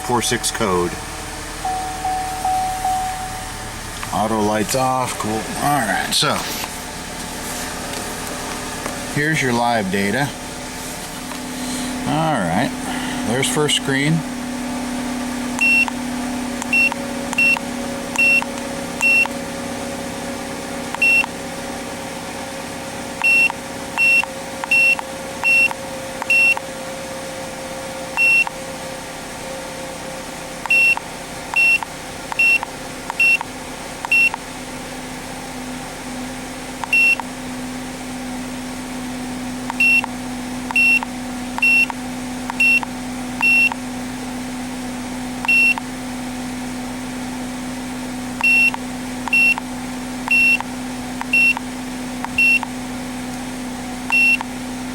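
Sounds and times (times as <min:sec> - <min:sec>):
car engine idling: 0:00.0 - 0:54.9
short high beeps: 0:01.6 - 0:03.6, 0:15.6 - 0:15.9, 0:16.7 - 0:17.6, 0:18.2 - 0:19.3, 0:21.0 - 0:21.3, 0:23.2 - 0:25.7, 0:26.3 - 0:26.6, 0:30.7 - 0:31.0, 0:39.7 - 0:40.1, 0:40.7 - 0:42.0, 0:42.6 - 0:43.8, 0:45.4 - 0:45.8, 0:48.4 - 0:49.6, 0:50.3 - 0:50.6, 0:51.3 - 0:51.6, 0:52.4 - 0:52.7, 0:54.1 - 0:54.4.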